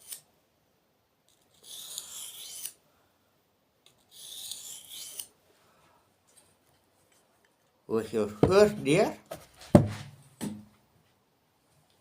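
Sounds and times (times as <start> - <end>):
knife scraping on sharpener: 1.4 - 2.8, 4.0 - 5.3.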